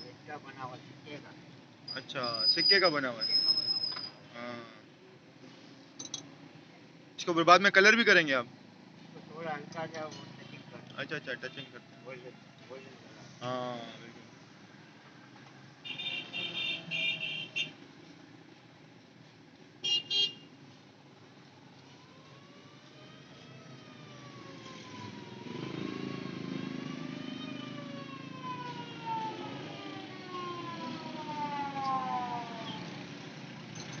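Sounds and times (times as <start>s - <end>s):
steady traffic hum: 0.0s - 34.0s
car horn double beep: 19.8s - 20.4s
passing siren: 21.6s - 33.2s.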